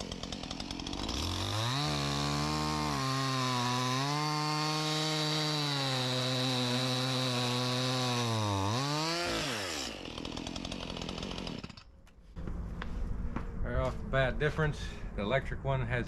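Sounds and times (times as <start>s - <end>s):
chainsaw running at high speed: 0.0s - 11.9s.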